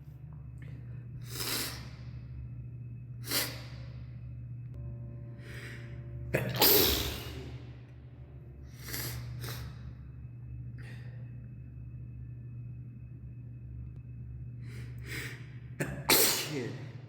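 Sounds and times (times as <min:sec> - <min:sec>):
steady low hum: 0:00.0 - 0:17.0
person sneezing: 0:06.4 - 0:07.5, 0:15.8 - 0:16.9.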